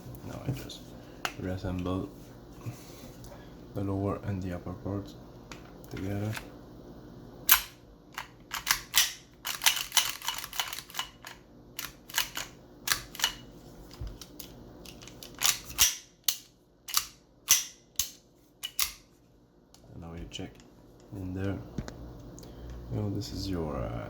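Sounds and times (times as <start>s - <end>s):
pistol slide clicks: 15.4s - 19.0s.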